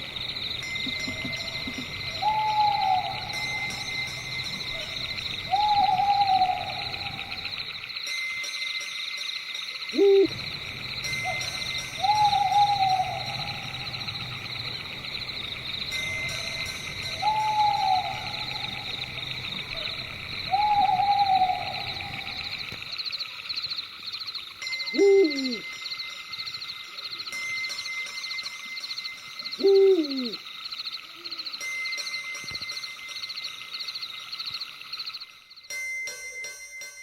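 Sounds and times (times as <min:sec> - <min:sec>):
night insects chirring: 0:00.0 - 0:36.8
owl hooting: 0:00.7 - 0:07.7, 0:09.9 - 0:10.4, 0:11.1 - 0:14.5, 0:16.2 - 0:22.7, 0:25.0 - 0:25.7, 0:29.6 - 0:30.4.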